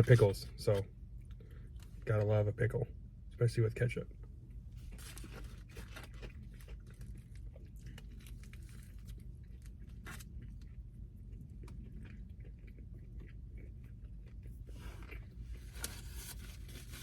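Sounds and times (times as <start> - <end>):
steady low hum: 0.0 - 17.0
person chewing crunchily: 4.5 - 17.0.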